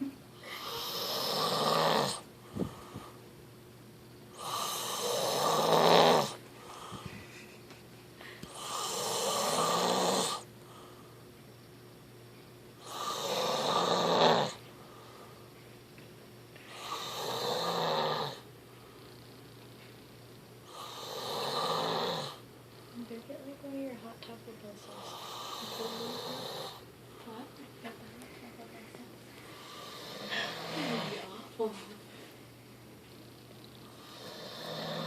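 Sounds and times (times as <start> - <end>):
quiet breathing: 0.3 - 3.3, 6.3 - 7.6, 8.2 - 11.3, 14.5 - 15.7, 24.7 - 32.9
person snoring loudly: 0.5 - 2.2, 4.4 - 6.4, 8.5 - 10.4, 12.8 - 14.6, 16.8 - 18.4, 20.7 - 22.4, 24.9 - 26.8, 29.7 - 31.2, 34.0 - 35.0.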